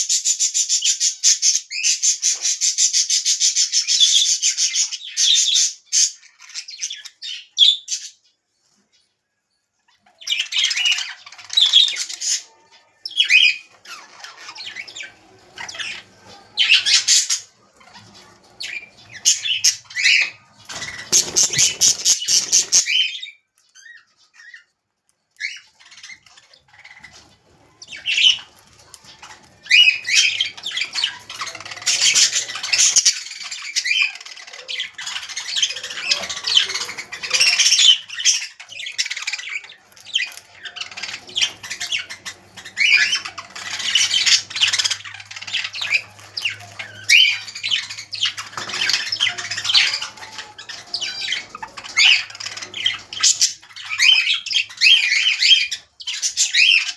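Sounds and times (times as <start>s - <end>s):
parrots chirping and squawking: 0.0s - 56.9s.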